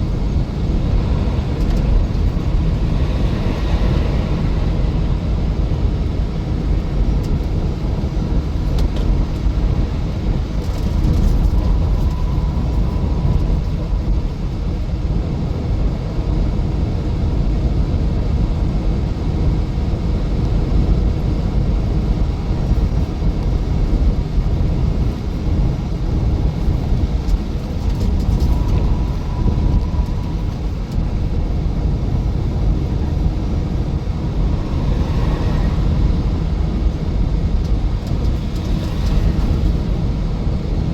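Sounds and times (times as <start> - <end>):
vehicle interior road rumble: 0.0 - 40.9.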